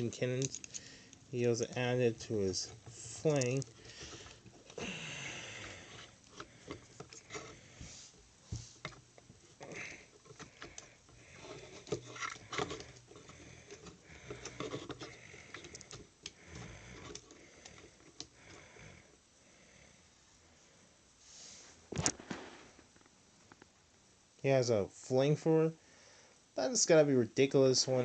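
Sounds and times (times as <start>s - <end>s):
plastic toy parts clicking and scraping: 0.0s - 4.8s, 5.6s - 7.6s, 9.6s - 18.6s.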